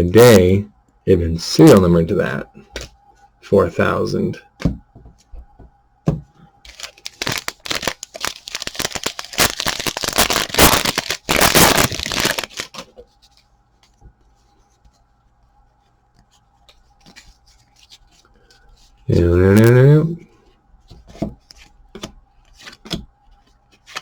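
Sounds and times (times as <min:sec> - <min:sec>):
foil wrapper tearing and crinkling: 0:06.7 - 0:12.8.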